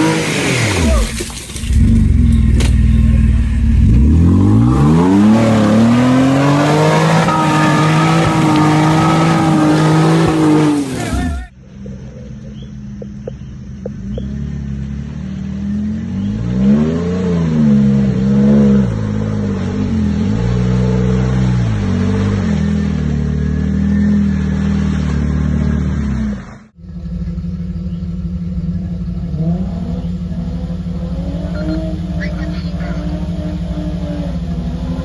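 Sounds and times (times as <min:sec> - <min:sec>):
off-road vehicle engine revving: 0:00.0 - 0:35.0.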